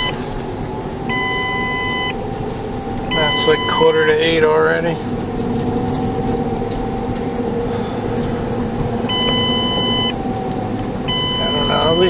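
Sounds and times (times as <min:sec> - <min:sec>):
road and engine noise: 0:00.0 - 0:12.0
electronic beep: 0:01.1 - 0:02.2, 0:03.1 - 0:04.3, 0:09.1 - 0:10.2, 0:11.1 - 0:12.0.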